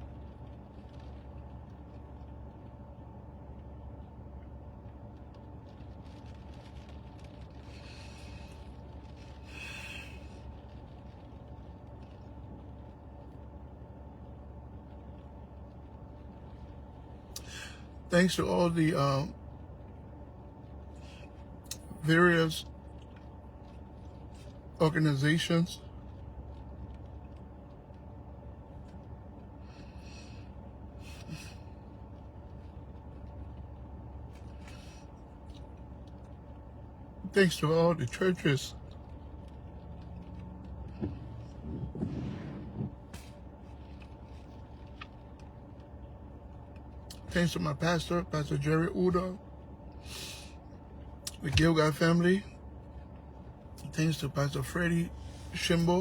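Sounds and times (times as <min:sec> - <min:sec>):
steady background hum: 0:00.0 - 0:56.0
man speaking: 0:18.1 - 0:19.4, 0:21.7 - 0:22.6, 0:24.8 - 0:25.8, 0:37.2 - 0:38.8, 0:47.1 - 0:49.4, 0:51.3 - 0:52.5, 0:53.8 - 0:56.0.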